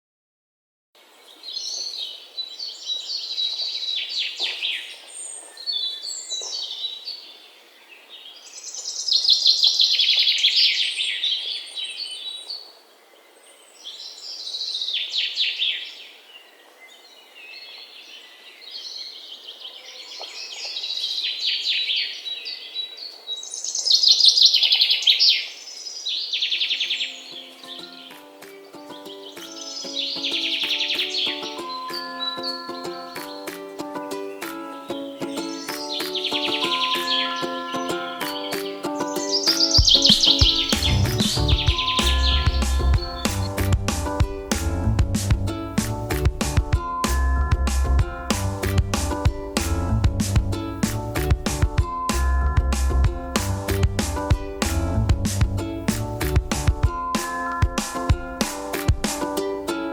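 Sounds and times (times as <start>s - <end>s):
soft bird calls: 1.1s - 43.7s
birds singing trills: 1.2s - 43.6s.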